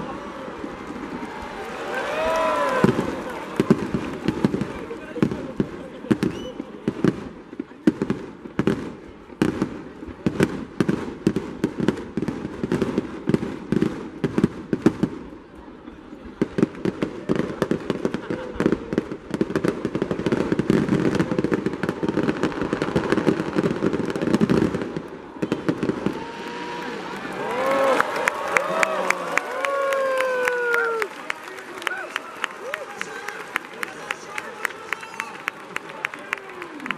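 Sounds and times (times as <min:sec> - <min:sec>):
fireworks bangs and crackling: 0:00.0 - 0:28.5.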